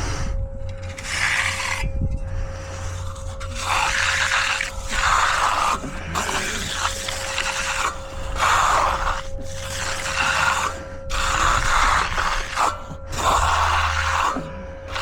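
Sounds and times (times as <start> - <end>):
hand tool scraping concrete: 0.0 - 15.0
low mechanical hum: 0.0 - 15.0.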